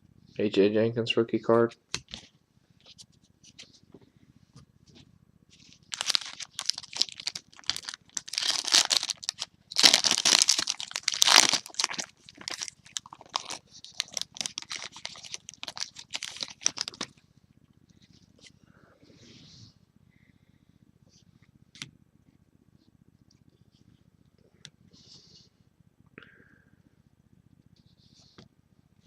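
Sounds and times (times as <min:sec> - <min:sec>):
plastic wrapper crinkling: 0:05.8 - 0:17.2.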